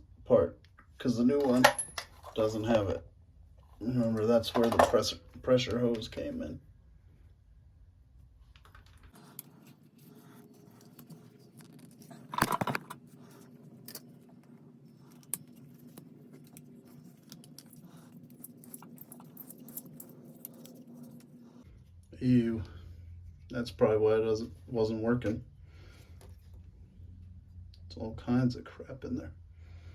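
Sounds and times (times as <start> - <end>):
steady low hum: 0.0 - 29.9
metal clicks and clinks of tools: 1.4 - 2.4.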